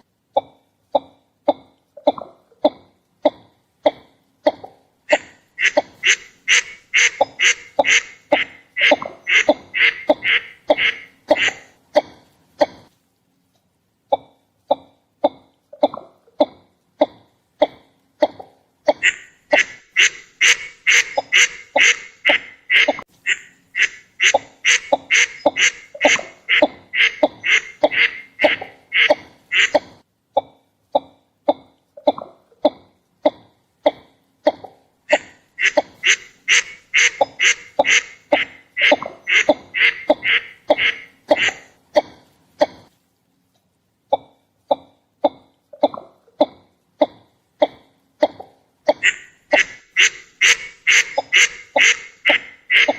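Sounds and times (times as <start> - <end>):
duck calling: 5.1 - 11.7, 18.9 - 29.8, 35.1 - 41.7, 48.9 - 52.9.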